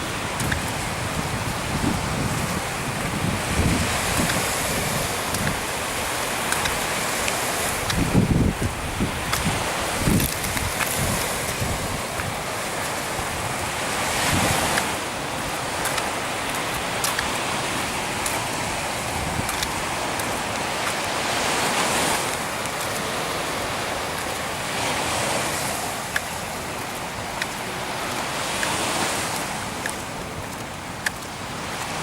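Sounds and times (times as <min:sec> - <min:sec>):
wind on microphone: 0:00.0 - 0:22.4
sea waves washing ashore: 0:00.0 - 0:32.0.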